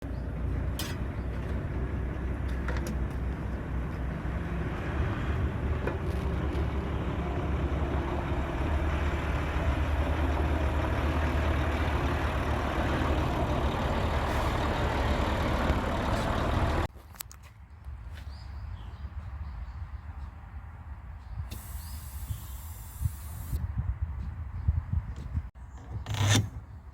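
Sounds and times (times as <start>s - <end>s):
truck engine rumbling: 0.0s - 16.9s.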